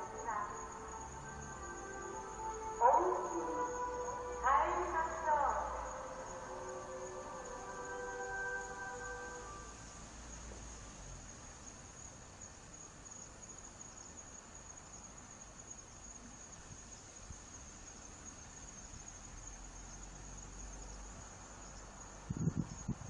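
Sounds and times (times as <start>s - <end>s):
crickets chirring: 0.0s - 23.0s.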